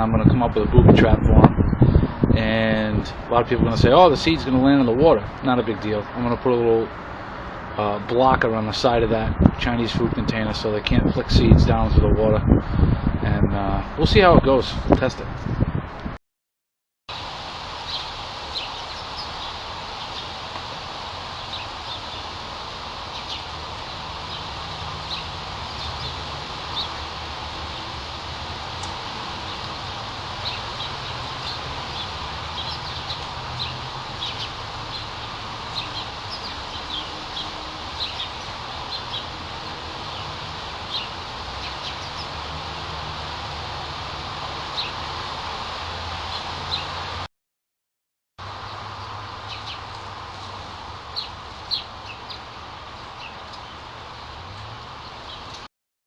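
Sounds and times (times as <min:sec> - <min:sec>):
outdoor background rush: 0:00.0 - 0:16.1, 0:17.1 - 0:47.3, 0:48.4 - 0:55.7
small birds chirping: 0:17.7 - 0:42.8, 0:44.7 - 0:45.1, 0:46.2 - 0:47.0, 0:48.7 - 0:54.3, 0:55.0 - 0:55.7.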